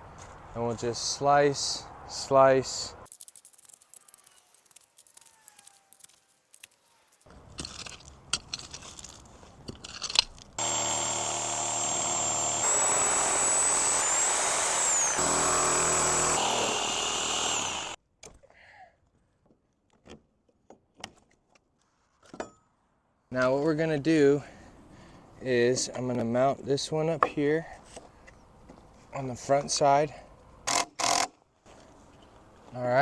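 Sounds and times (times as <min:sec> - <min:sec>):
handling and rustling: 0:03.1 - 0:10.6
reciprocating saw cutting: 0:10.6 - 0:18.0.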